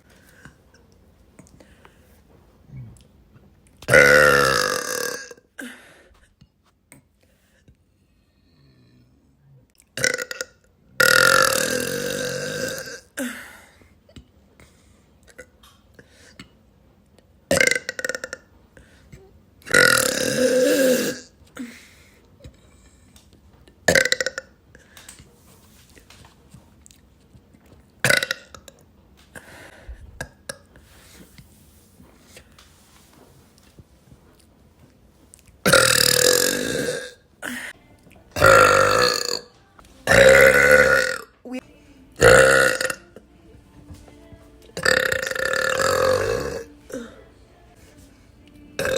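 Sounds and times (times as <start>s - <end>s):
woman burping loudly: 3.9s - 5.8s, 10.0s - 13.6s, 17.5s - 18.5s, 19.7s - 21.7s, 23.9s - 24.5s, 28.0s - 28.8s, 35.6s - 37.8s, 38.4s - 41.6s, 42.2s - 43.2s, 44.8s - 47.2s.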